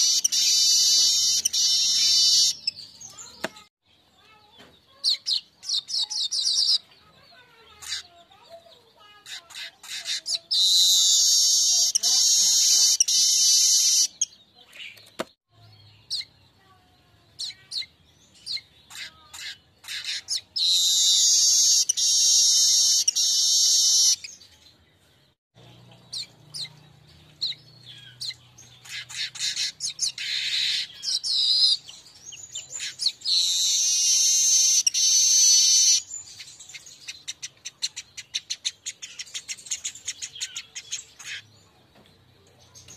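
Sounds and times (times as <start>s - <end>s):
bird buzzy trills: 0.0s - 3.4s, 25.6s - 37.4s
bird sharp chips: 0.0s - 15.4s, 17.4s - 24.6s, 27.4s - 41.5s.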